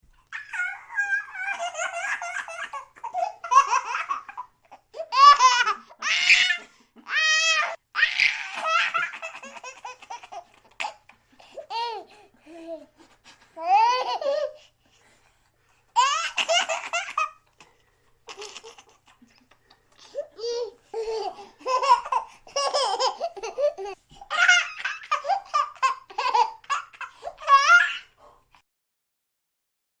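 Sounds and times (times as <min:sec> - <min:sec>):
young child laughing: 0:00.3 - 0:11.1, 0:18.3 - 0:28.1.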